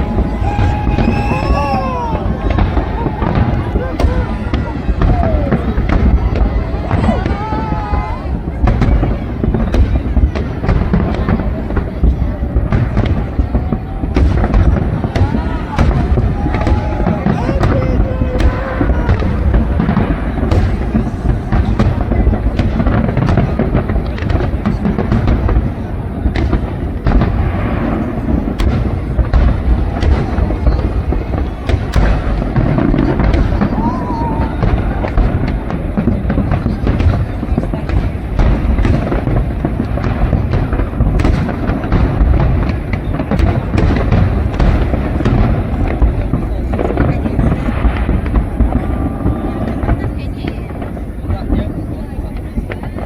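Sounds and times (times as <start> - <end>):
deep rumble of bursting shells: 0.0 - 53.0
fireworks bangs: 0.0 - 53.0.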